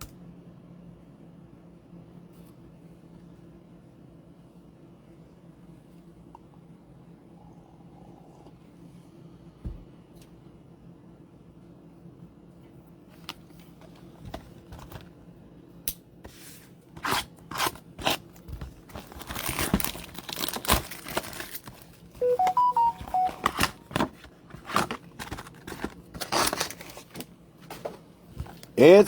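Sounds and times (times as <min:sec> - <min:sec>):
plastic wrapping crinkling: 0:18.8 - 0:22.0
electronic beeps: 0:22.2 - 0:23.9.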